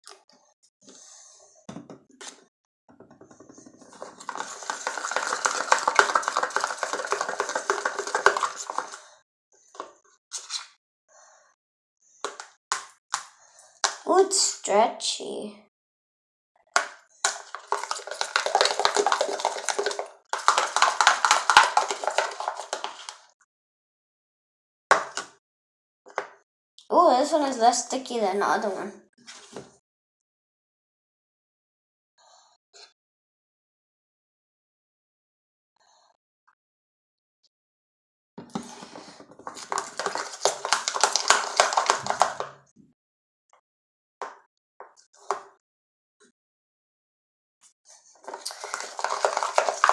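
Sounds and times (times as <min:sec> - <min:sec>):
slime clicking and squelching: 0:48.4 - 0:49.9.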